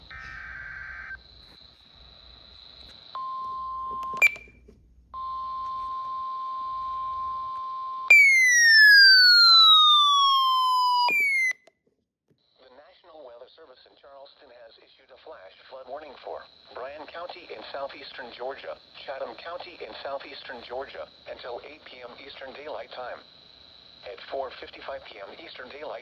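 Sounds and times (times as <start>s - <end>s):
falling electronic tone: 8.1s - 11.6s.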